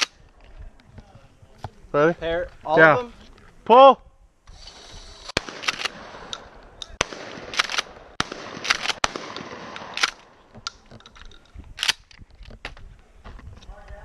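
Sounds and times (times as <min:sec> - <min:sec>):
gunshots: 0:05.3 - 0:10.8.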